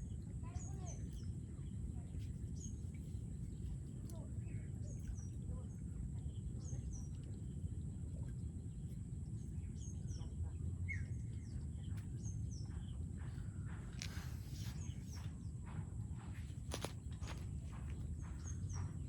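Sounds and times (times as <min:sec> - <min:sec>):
steady low rumble: 0:00.0 - 0:19.0
birds chirping: 0:09.6 - 0:19.0
brief rustling: 0:13.9 - 0:15.3, 0:16.4 - 0:18.0.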